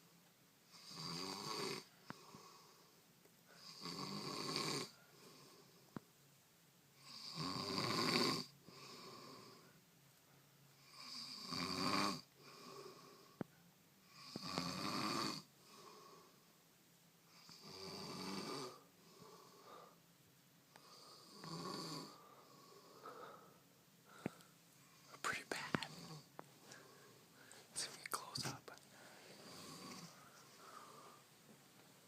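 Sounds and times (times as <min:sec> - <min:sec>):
heavy snoring: 0:00.7 - 0:02.9, 0:03.6 - 0:05.7, 0:07.0 - 0:09.7, 0:10.8 - 0:13.4, 0:14.1 - 0:16.4, 0:17.3 - 0:20.0, 0:20.8 - 0:23.5, 0:25.8 - 0:26.3, 0:29.4 - 0:31.2
soft breath: 0:15.6 - 0:16.6, 0:18.7 - 0:20.1, 0:20.7 - 0:32.0.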